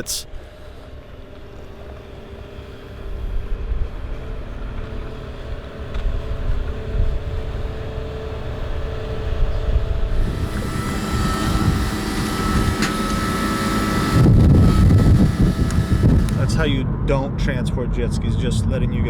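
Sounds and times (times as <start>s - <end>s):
vehicle engine rumbling: 8.5s - 18.9s.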